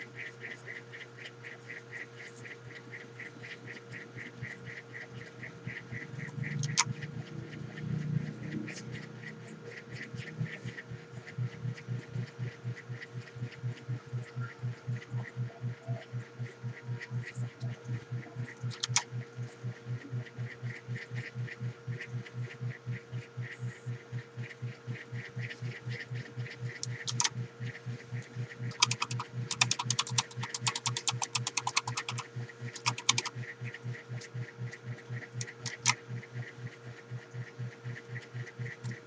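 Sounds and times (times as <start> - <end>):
pulsing hum: 3.5 - 39.0
keyboard typing clicks: 6.2 - 7.0, 18.7 - 19.1, 26.7 - 27.4, 28.6 - 33.4, 35.4 - 36.0.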